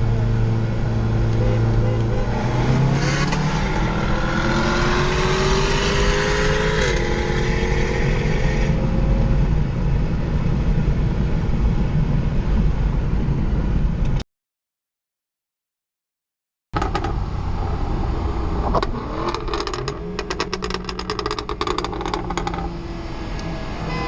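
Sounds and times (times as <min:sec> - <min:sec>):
road and wind noise: 0:00.0 - 0:14.2, 0:16.8 - 0:24.0
car engine accelerating hard: 0:02.2 - 0:08.8.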